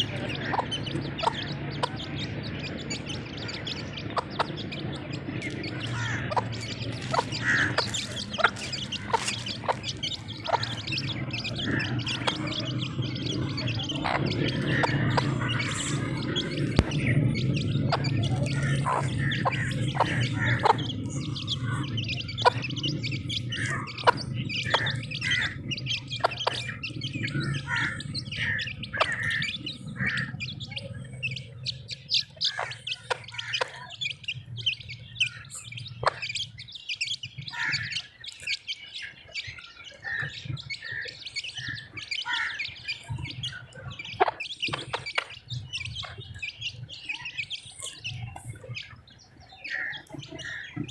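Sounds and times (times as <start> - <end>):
low steady rumble: 0.0 - 38.0
chicks peeping: 0.0 - 50.9.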